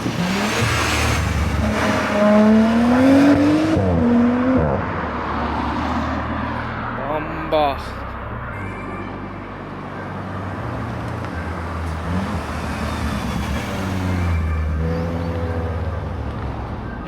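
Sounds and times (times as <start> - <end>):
car engine revving: 0.0 - 8.2, 10.5 - 16.1.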